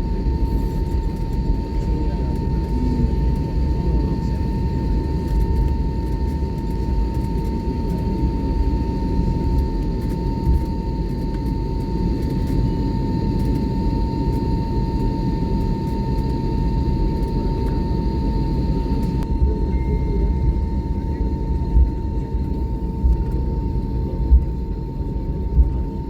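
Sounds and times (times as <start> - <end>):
aircraft cabin rumble: 0.0 - 26.0
constant high whine: 0.0 - 26.0.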